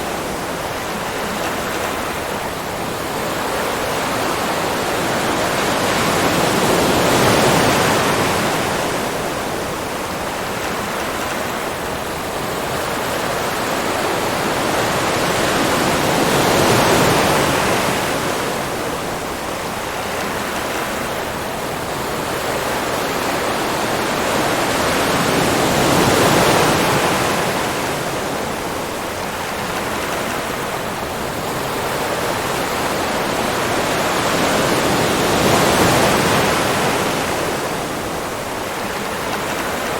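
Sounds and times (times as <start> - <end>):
ocean waves breaking: 0.0 - 39.9.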